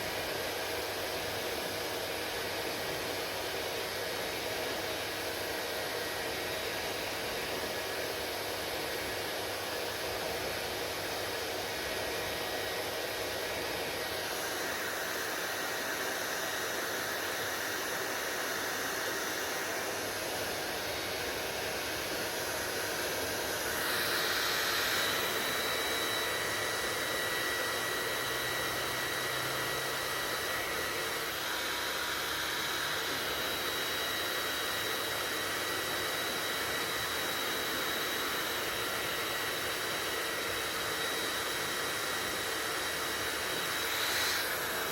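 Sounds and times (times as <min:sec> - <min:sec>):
hair dryer running: 0:00.0 - 0:44.9.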